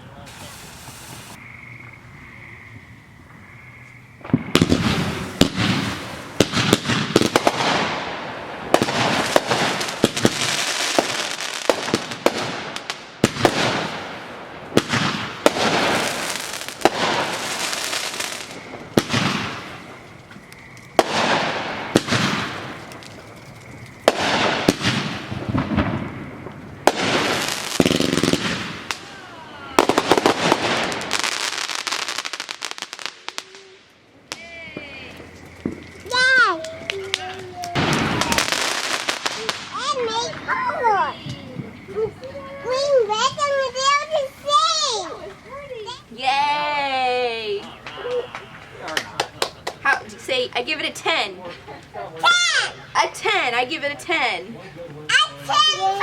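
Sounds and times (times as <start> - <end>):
fireworks banging and crackling: 0.0 - 2.0, 2.7 - 56.0.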